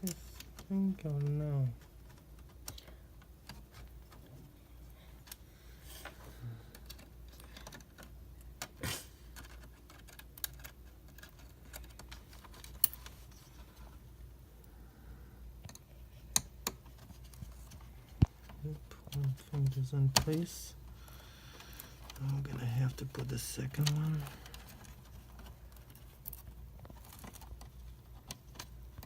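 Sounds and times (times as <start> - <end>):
small laptop parts clicking: 6.7 - 13.2, 15.6 - 18.4.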